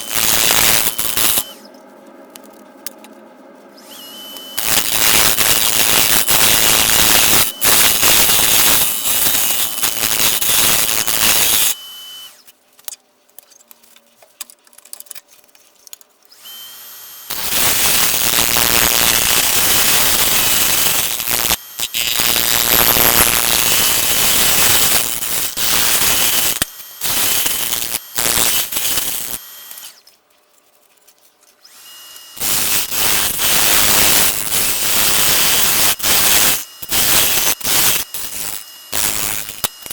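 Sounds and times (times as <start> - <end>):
tool hissing on spinning wood: 0.0 - 1.6, 3.9 - 12.4, 16.4 - 30.0, 31.7 - 39.9
lathe whine: 0.0 - 1.8, 3.8 - 12.4, 16.3 - 30.0, 31.6 - 39.9.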